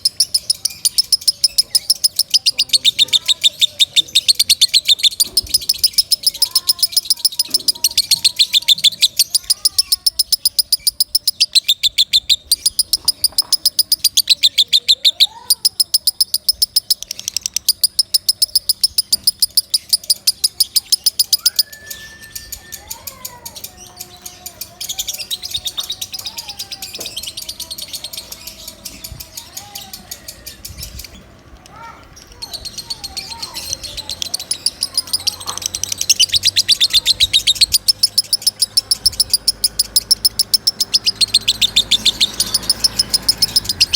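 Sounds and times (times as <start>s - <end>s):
bird chirping: 0.0s - 43.9s
bird whistles gliding: 21.3s - 23.0s.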